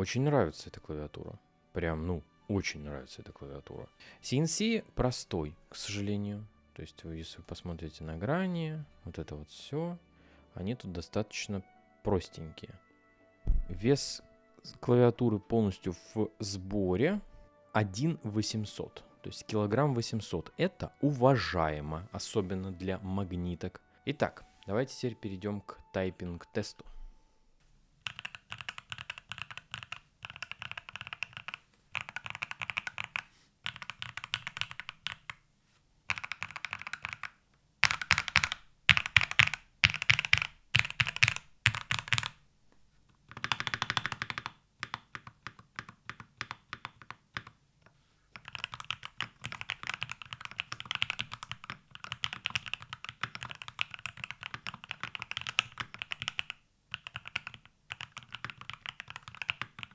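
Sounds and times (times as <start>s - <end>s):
keyboard typing: 28.0s - 35.4s, 36.1s - 42.4s, 43.2s - 59.9s.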